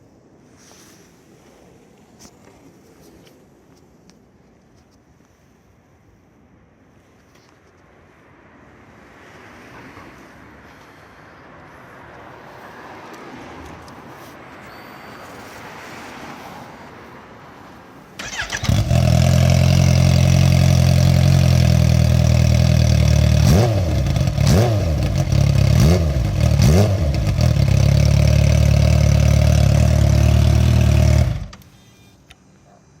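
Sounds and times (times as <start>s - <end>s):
loud motorcycle engine revving: 18.2s - 31.5s.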